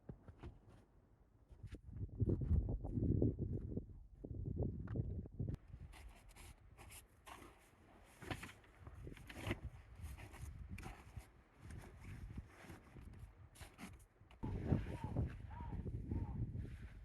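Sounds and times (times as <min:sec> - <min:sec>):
wind rumble on microphone: 0:01.5 - 0:06.2, 0:08.8 - 0:13.6, 0:14.4 - 0:17.0.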